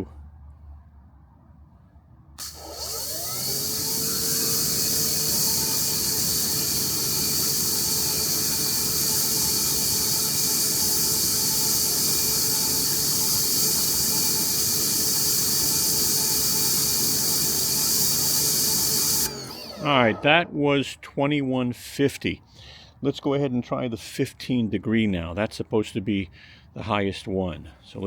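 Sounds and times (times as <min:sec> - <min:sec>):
water spraying hiss: 0:02.4 - 0:19.3
pressure washer motor hum: 0:02.4 - 0:20.5.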